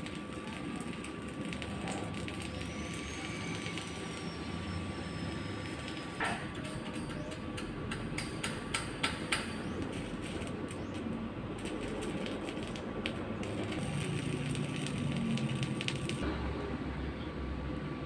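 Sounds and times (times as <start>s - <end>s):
arc welding crackle: 0.0s - 16.3s.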